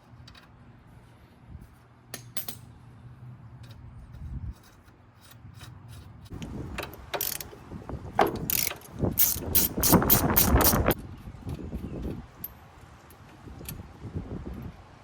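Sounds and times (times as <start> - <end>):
socket ratchet clicking: 6.3 - 7.5, 8.3 - 11.0.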